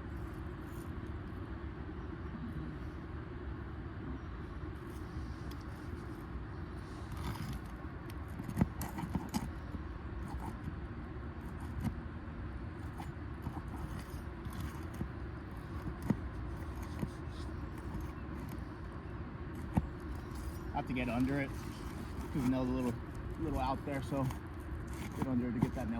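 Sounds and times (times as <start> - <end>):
steady low rumble: 0.0 - 25.9
light scraping: 4.8 - 10.7, 12.8 - 25.9.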